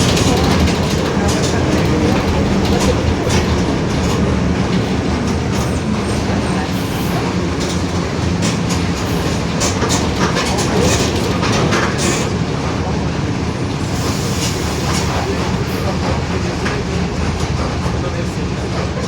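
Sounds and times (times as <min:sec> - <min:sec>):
rattles and clicks: 0:00.0 - 0:12.8
bus diesel engine running: 0:00.0 - 0:19.0.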